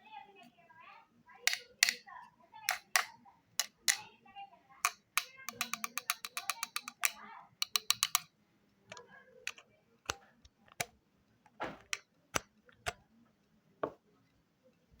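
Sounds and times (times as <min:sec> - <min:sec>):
sharp clicks: 0:01.5 - 0:02.0, 0:02.7 - 0:04.0, 0:04.9 - 0:08.3.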